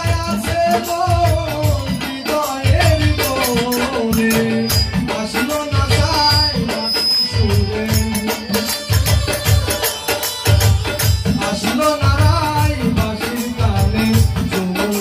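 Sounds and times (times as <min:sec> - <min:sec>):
low drum beat: 0:00.0 - 0:06.8
shaker rhythm: 0:00.0 - 0:06.8, 0:07.4 - 0:15.0.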